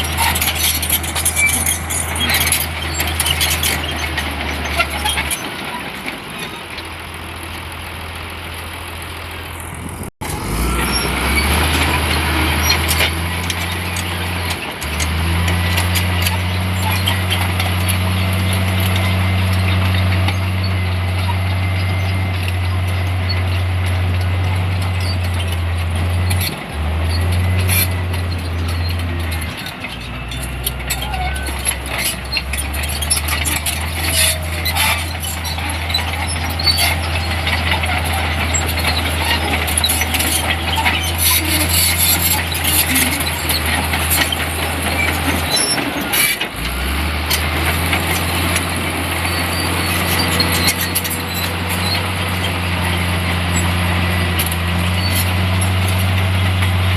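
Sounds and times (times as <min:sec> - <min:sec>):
metallic clanks and squeaks: 0:00.0 - 0:07.7, 0:09.1 - 0:56.9
diesel engine of heavy machinery: 0:00.0 - 0:56.9.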